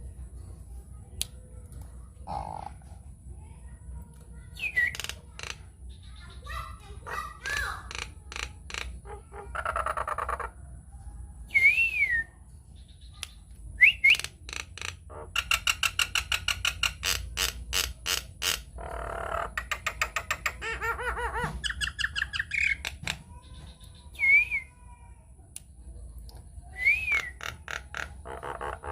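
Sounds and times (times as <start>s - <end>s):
myna bird singing: 4.4s - 10.6s, 11.4s - 17.6s, 18.7s - 24.9s, 25.6s - 28.9s.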